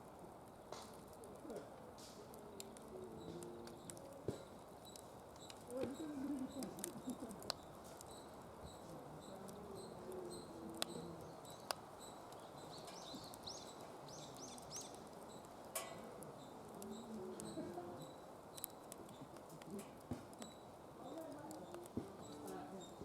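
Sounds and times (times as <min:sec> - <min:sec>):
wood fire crackling: 0:00.0 - 0:23.0
bird chirping: 0:02.5 - 0:19.4.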